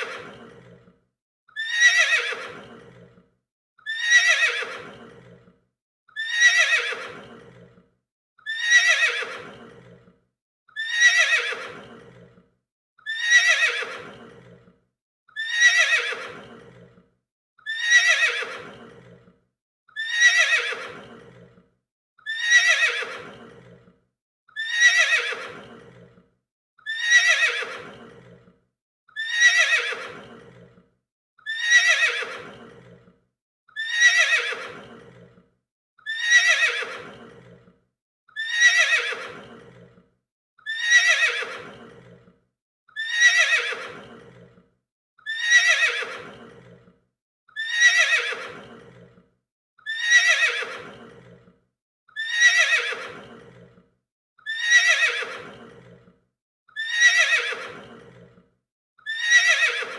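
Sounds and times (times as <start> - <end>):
horse neighing: 1.6 - 3.1, 3.9 - 5.5, 6.2 - 7.7, 8.5 - 10.1, 10.8 - 12.3, 13.1 - 14.6, 15.4 - 16.9, 17.7 - 19.2, 20.0 - 21.5, 22.3 - 23.8, 24.6 - 26.1, 26.9 - 28.4, 29.2 - 30.7, 31.5 - 33.0, 33.8 - 35.3, 36.1 - 37.6, 38.4 - 39.8, 40.7 - 42.2, 43.0 - 44.4, 45.3 - 46.8, 47.6 - 49.0, 49.9 - 51.4, 52.2 - 53.6, 54.6 - 56.0, 56.8 - 58.2, 59.2 - 59.9.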